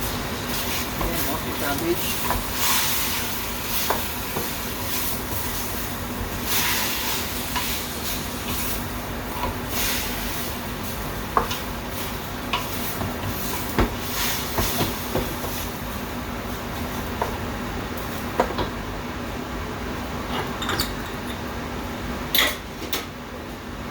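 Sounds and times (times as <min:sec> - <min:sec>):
food sizzling in a pan: 0:00.0 - 0:18.7.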